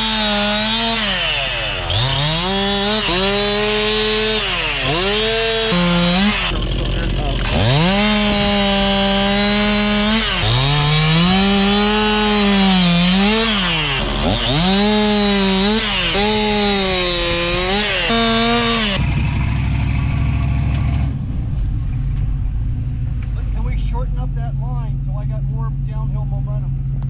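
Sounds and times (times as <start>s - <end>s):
chainsaw cutting wood: 0.0s - 19.2s
low engine rumble: 1.4s - 12.8s, 16.3s - 27.0s.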